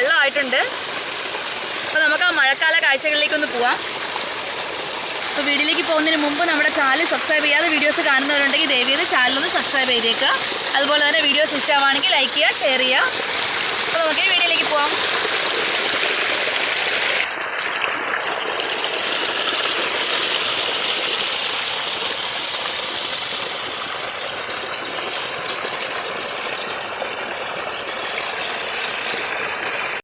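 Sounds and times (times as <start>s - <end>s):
rush of flowing runoff water: 0.0s - 30.0s
rain falling: 0.7s - 17.3s.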